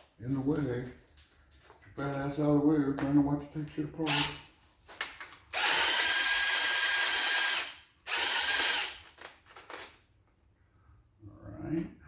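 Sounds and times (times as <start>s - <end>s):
power tool spinning a bolt: 4.1s - 4.4s, 5.5s - 9.2s.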